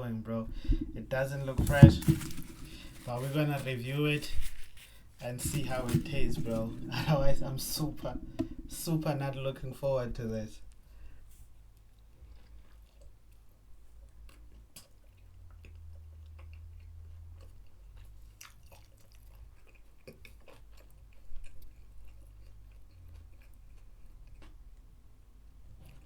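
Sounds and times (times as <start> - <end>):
knock: 1.6 - 3.1
person chewing burger: 4.3 - 5.2, 12.0 - 26.0.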